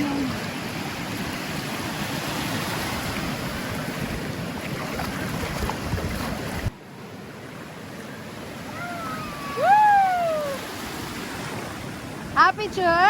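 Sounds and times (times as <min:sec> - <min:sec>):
surf rushing: 0:00.0 - 0:13.0
wind on the microphone: 0:02.9 - 0:06.8.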